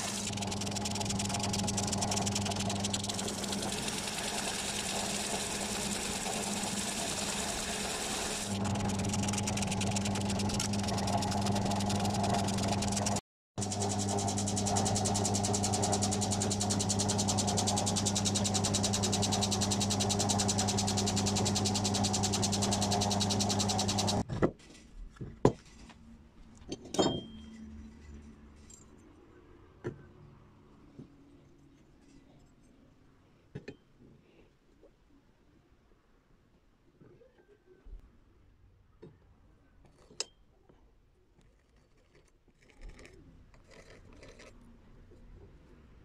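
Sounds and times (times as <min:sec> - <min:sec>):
drill press motor humming: 0:00.0 - 0:24.2.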